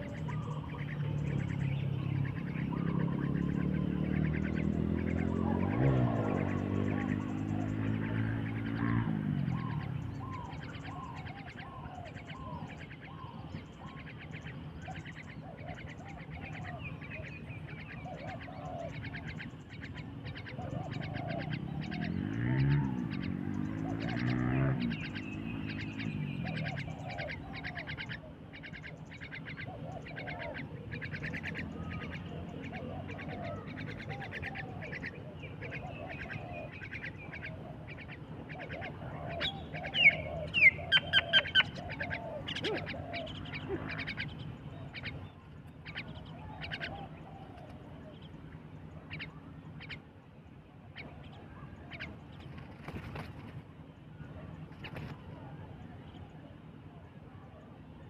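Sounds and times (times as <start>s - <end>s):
dove cooing: 0.0s - 48.3s
mynas chattering: 41.2s - 44.4s.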